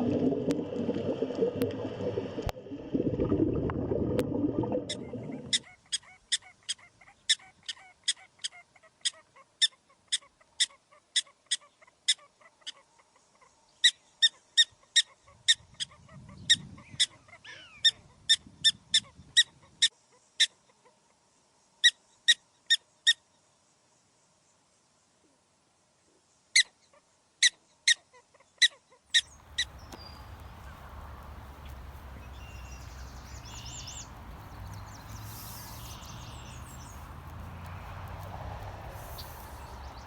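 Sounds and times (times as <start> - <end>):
faint bird chirps: 29.1 - 40.0
bird giving sharp high calls: 29.2 - 40.0
outdoor rumble: 29.3 - 40.0.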